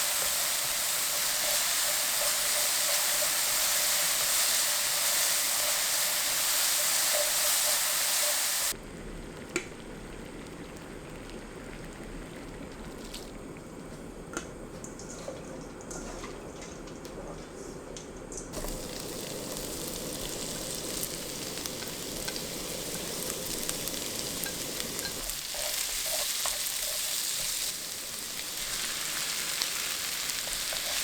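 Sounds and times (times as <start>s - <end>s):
loud cooking hiss: 0.0s - 8.8s, 18.6s - 31.0s.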